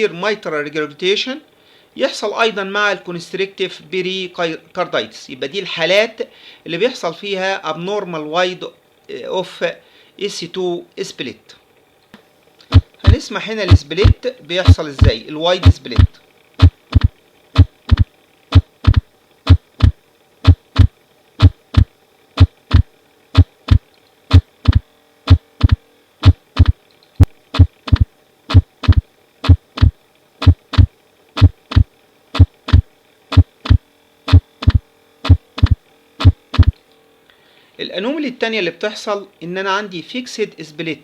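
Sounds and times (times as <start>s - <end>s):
faint steady hum: 0.0s - 41.0s
heartbeat thumps: 12.7s - 36.8s.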